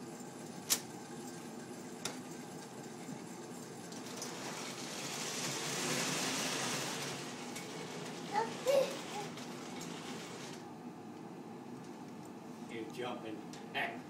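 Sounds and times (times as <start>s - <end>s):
model train running on track: 2.0s - 10.5s.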